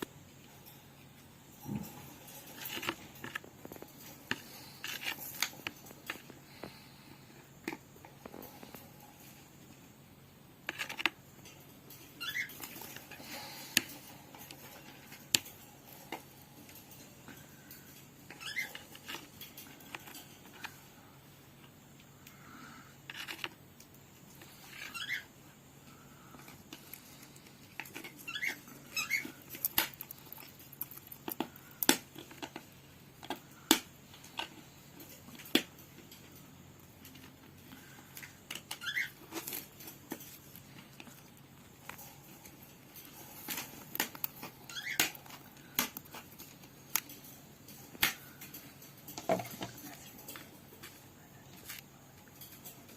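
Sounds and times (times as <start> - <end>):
cockatiel chirping: 12.2 - 12.6, 18.4 - 18.7, 24.8 - 25.3, 28.2 - 29.4, 38.7 - 39.2, 44.7 - 45.2.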